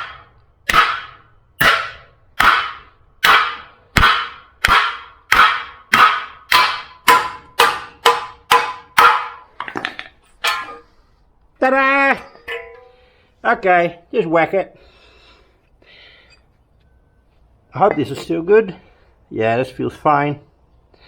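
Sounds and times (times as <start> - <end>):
hammer striking metal: 0.0 - 10.9, 12.2 - 13.0.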